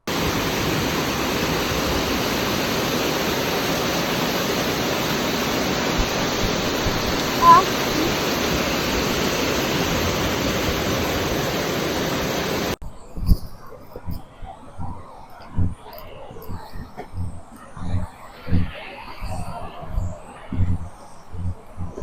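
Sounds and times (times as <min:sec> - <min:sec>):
water rushing: 0:00.0 - 0:12.8.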